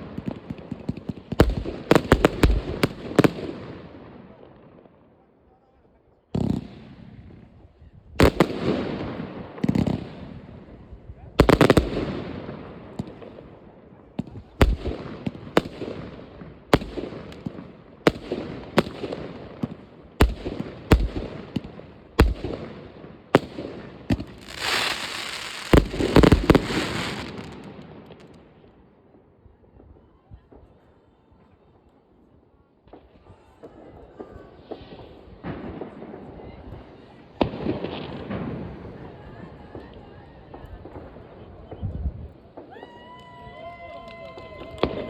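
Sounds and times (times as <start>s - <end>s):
fireworks bangs echoing: 0.0s - 4.4s, 8.2s - 28.6s.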